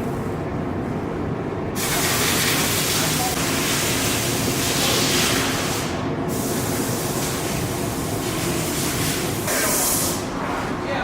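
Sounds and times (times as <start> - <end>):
low shop rumble: 0.0 - 11.0
compressed air hissing: 4.8 - 10.3.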